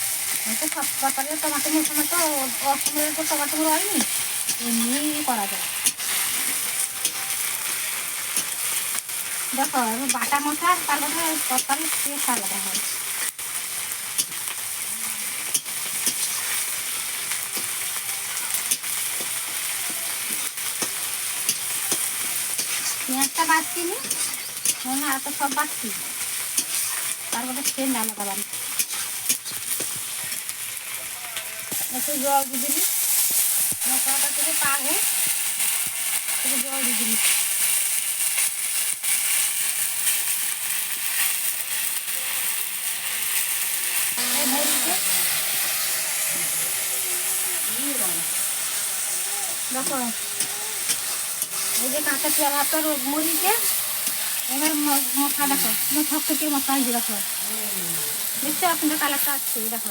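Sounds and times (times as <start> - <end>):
paste sizzling in hot oil: 0.0 - 59.9
spatula scraping a pan: 20.3 - 28.0, 28.7 - 30.0, 43.9 - 57.4.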